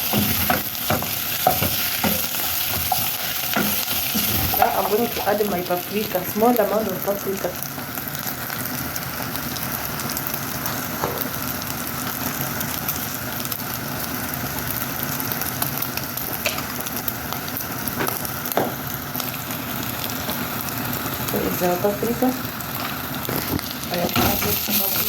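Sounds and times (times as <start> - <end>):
beef sizzling in a pan: 0.0 - 25.0.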